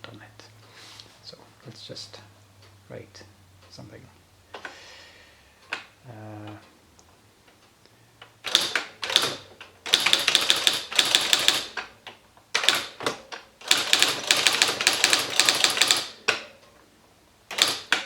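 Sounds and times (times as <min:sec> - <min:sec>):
electric typewriter typing: 0:08.4 - 0:16.5, 0:17.5 - 0:18.0.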